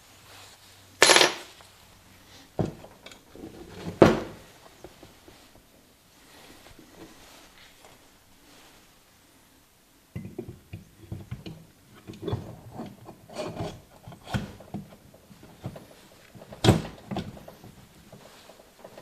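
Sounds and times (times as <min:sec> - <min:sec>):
rubbing and scraping on engine parts: 0:12.3 - 0:16.6, 0:17.3 - 0:19.0.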